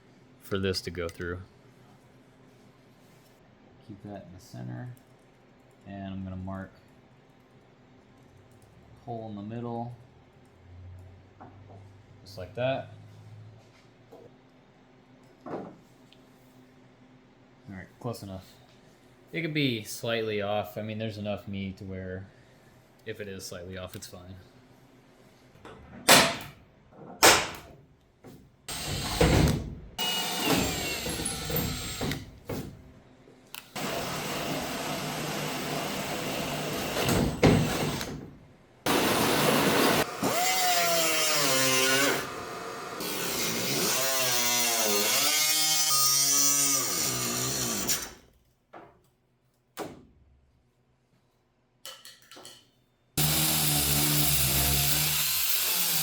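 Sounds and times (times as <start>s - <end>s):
sharp knocks: 27.2s - 27.8s
power drill whining: 28.7s - 29.3s, 30.0s - 32.2s, 33.8s - 38.1s, 38.9s - 45.2s, 45.8s - 48.2s, 53.2s - 56.0s.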